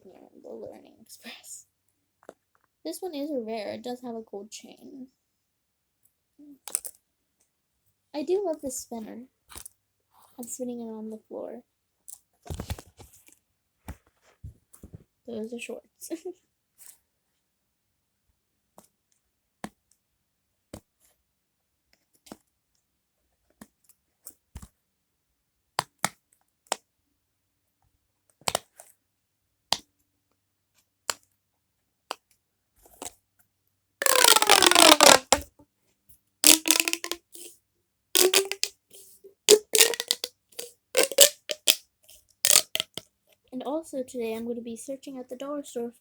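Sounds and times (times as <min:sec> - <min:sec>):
plastic toys clicking and tapping: 0:34.0 - 0:35.4, 0:36.4 - 0:37.5, 0:38.2 - 0:38.7, 0:39.5 - 0:41.8, 0:42.5 - 0:43.0.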